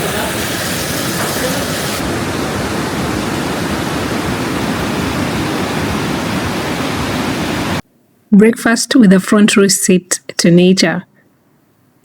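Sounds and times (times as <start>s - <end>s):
river rushing: 0.0s - 7.8s.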